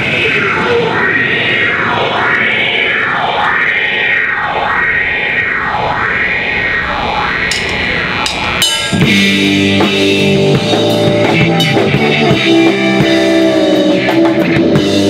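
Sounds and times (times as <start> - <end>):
rock band playing: 7.5 - 15.0.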